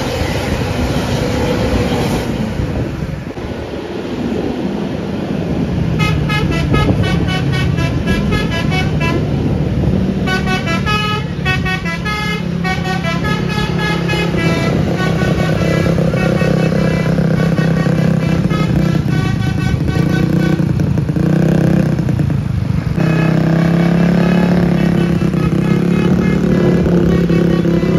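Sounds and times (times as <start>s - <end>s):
bus engine humming: 0.0s - 27.9s
multi-tone bus horn: 5.8s - 21.4s, 22.9s - 27.9s.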